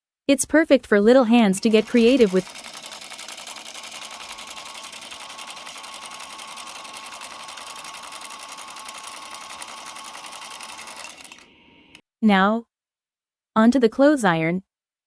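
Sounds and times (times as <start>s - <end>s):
toy sewing machine chattering: 1.4s - 12.0s.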